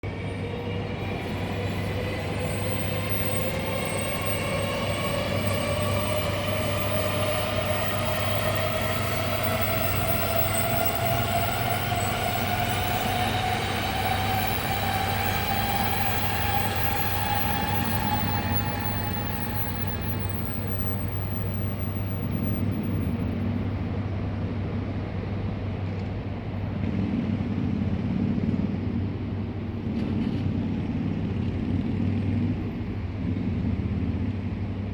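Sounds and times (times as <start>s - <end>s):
low rumble: 0.0s - 25.6s
train motor whine rising: 0.0s - 29.0s.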